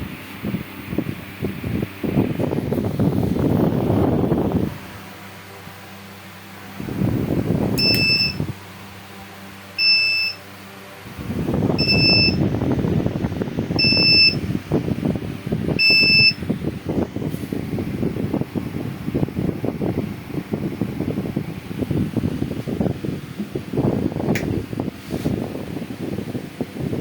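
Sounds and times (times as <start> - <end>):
short high buzzer beeps: 7.8 - 8.4, 9.8 - 10.4, 11.8 - 12.4.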